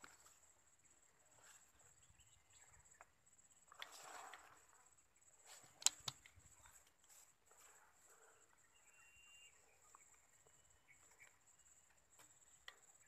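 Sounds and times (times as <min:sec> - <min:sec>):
rustle: 0:00.0 - 0:13.0
sharp clicks: 0:05.8 - 0:06.4.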